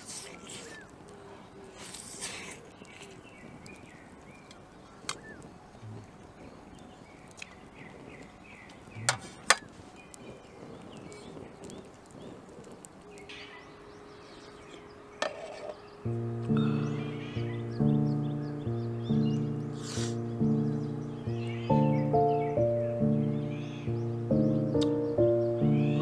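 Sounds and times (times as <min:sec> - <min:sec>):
small birds chirping: 0:00.0 - 0:26.0
background music: 0:16.0 - 0:26.0
sharp clicks: 0:24.4 - 0:25.3.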